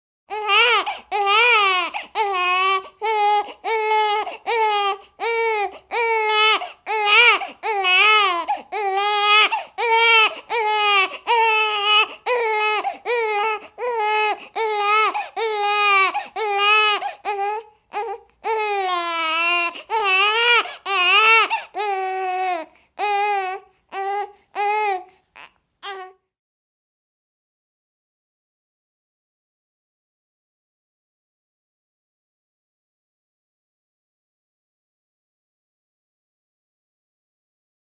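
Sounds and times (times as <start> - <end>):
baby crying: 0.3 - 26.3.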